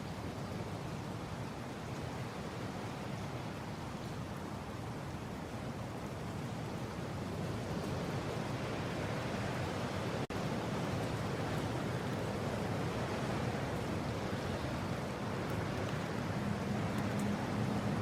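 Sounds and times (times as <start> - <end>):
wind blowing: 6.1 - 18.0.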